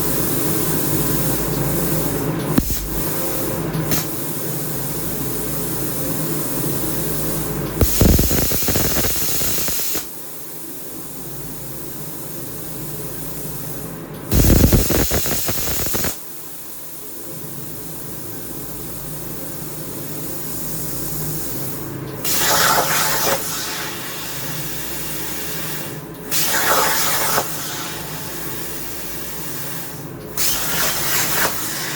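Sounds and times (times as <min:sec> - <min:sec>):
steady air hiss: 0:00.4 - 0:19.0
plasma torch blasts: 0:02.5 - 0:04.3, 0:07.8 - 0:10.1, 0:14.3 - 0:16.2, 0:26.3 - 0:29.4, 0:30.4 - 0:31.9
machine hum: 0:07.8 - 0:09.8.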